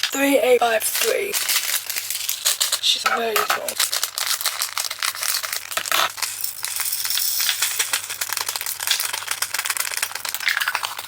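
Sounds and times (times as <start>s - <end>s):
tiny beads rattling into plastic: 0.8s - 11.0s.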